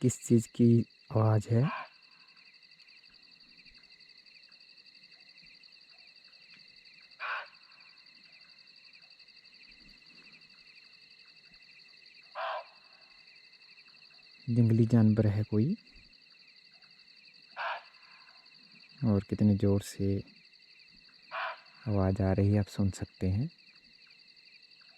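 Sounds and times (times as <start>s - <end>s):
crickets chirping: 0.0s - 24.9s
wild animal calls: 1.6s - 2.0s, 7.2s - 8.0s, 12.3s - 13.1s, 17.5s - 18.4s, 21.2s - 21.9s.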